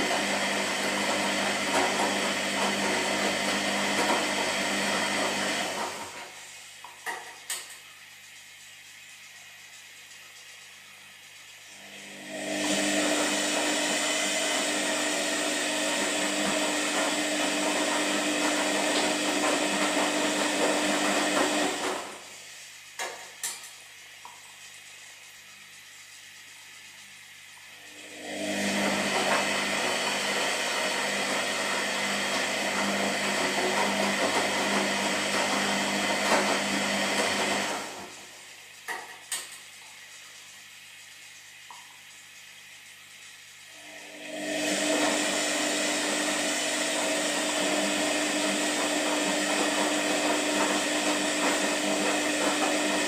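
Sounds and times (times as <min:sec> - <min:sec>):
washing machine drum humming: 0:00.0 - 0:53.0.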